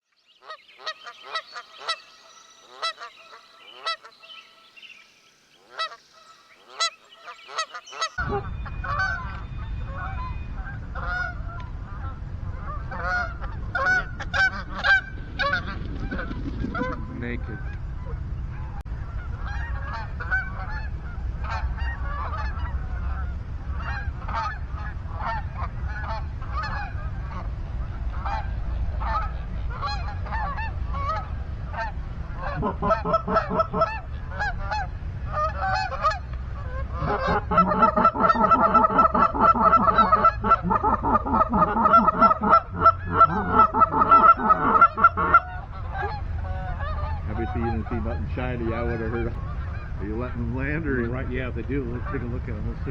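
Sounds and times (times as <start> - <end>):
geese honking: 0.4 - 4.8, 5.6 - 52.7
low steady rumble: 8.1 - 52.9.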